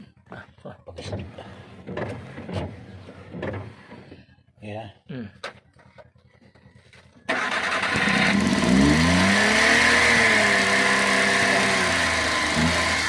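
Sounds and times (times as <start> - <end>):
three-cylinder engine revving: 7.3 - 13.0.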